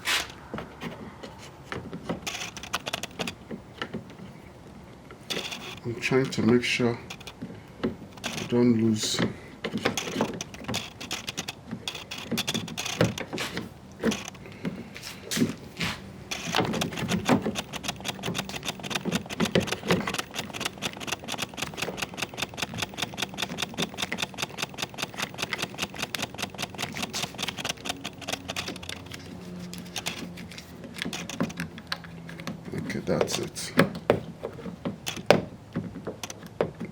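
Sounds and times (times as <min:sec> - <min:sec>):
metal parts knocking: 0:02.2 - 0:03.4, 0:08.2 - 0:14.5, 0:16.3 - 0:34.2
ratchet clicking: 0:02.3 - 0:03.4, 0:09.9 - 0:13.3, 0:14.0 - 0:14.4, 0:16.3 - 0:31.6.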